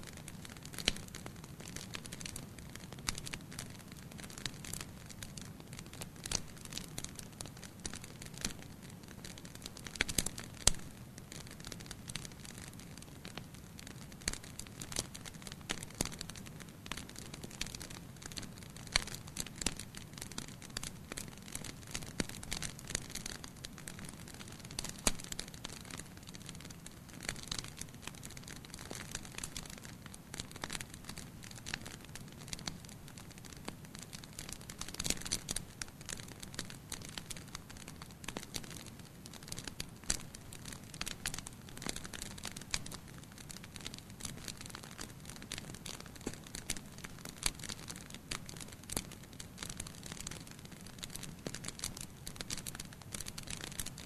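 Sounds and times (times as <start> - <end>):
fire crackling and popping: 0.0 - 54.0.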